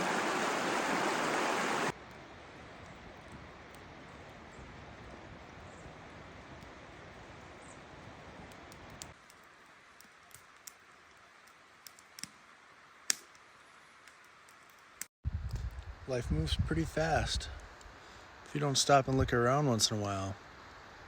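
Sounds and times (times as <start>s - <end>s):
river water flowing: 0.0s - 1.9s.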